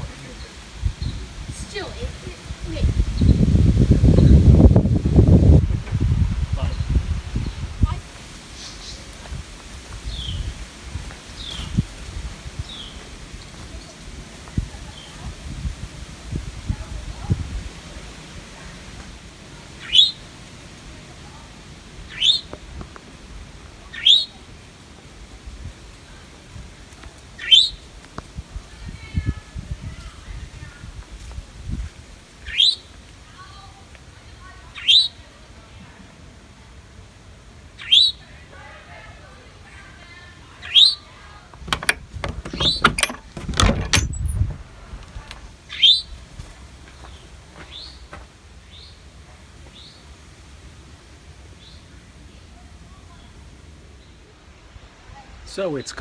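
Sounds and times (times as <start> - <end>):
clicks and knocks of handling: 41.6 - 44.4.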